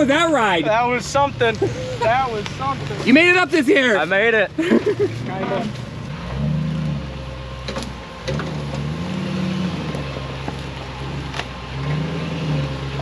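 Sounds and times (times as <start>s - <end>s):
engine running and revving: 4.6s - 13.0s.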